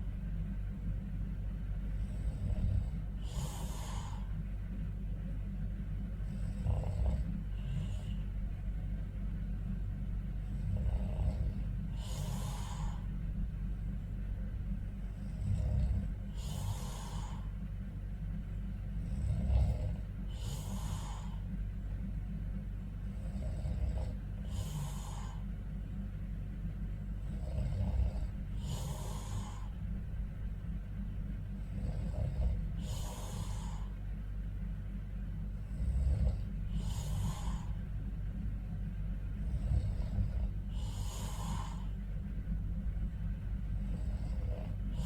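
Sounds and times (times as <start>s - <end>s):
steady low hum: 0.0s - 45.0s
man snoring: 1.9s - 4.4s, 6.2s - 8.2s, 10.4s - 13.2s, 15.0s - 17.6s, 19.0s - 21.5s, 23.0s - 25.5s, 27.2s - 29.8s, 31.6s - 34.0s, 35.5s - 37.8s, 39.4s - 42.0s, 43.7s - 45.0s.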